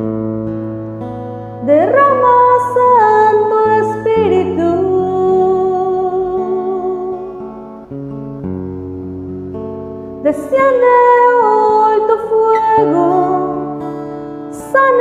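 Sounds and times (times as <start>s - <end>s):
strummed acoustic guitar: 0.0s - 15.0s
person singing long notes: 1.6s - 7.8s, 10.2s - 15.0s.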